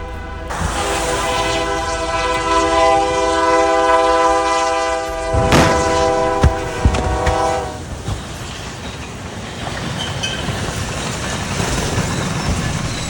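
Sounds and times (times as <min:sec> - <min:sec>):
horn chord: 0:00.0 - 0:07.8
scattered knocks: 0:05.4 - 0:08.3.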